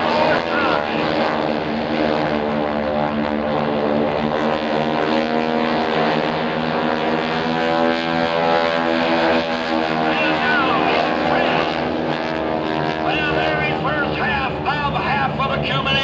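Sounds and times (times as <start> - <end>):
radial engines droning: 0.0 - 16.0.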